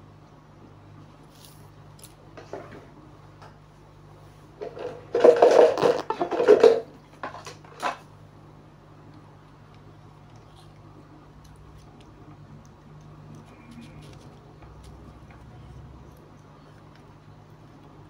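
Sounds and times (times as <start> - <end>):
faint electrical hum: 0.0 - 18.0.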